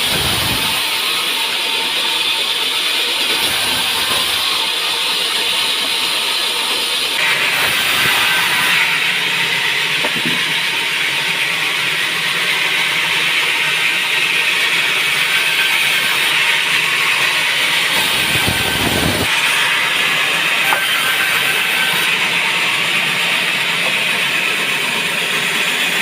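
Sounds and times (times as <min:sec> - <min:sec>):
sawmill saw cutting wood: 0:00.0 - 0:26.0.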